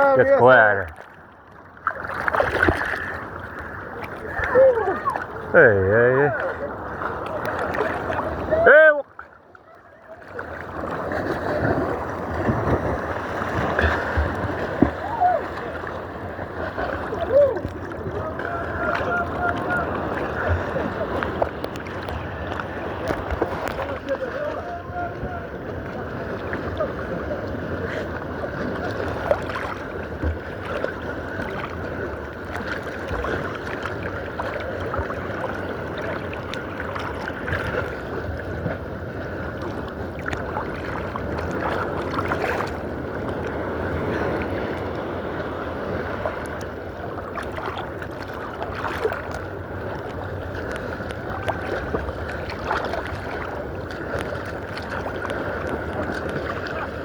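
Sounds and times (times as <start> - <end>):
sharp water splashes: 0.0 - 5.6, 6.2 - 9.3, 10.3 - 24.7, 28.6 - 31.8, 47.2 - 49.4, 50.1 - 57.0
sea water splashing and sloshing: 0.0 - 57.0.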